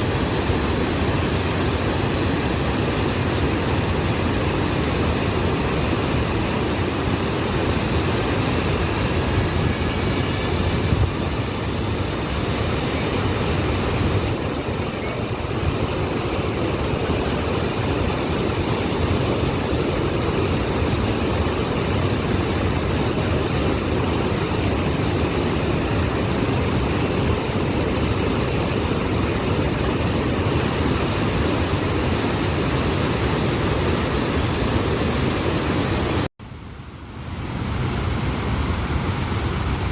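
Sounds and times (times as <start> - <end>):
waterfall rushing: 0.0 - 18.7, 30.5 - 36.3.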